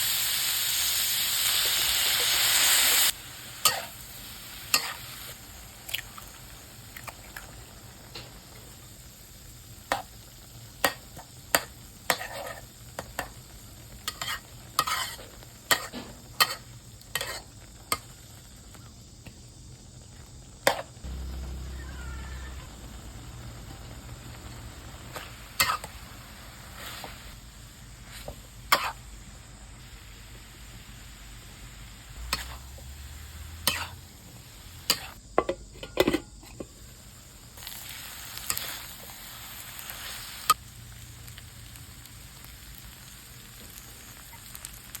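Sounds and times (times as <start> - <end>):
food sizzling in a pan: 0.0 - 45.0
utensil scraping a pan: 14.1 - 17.5.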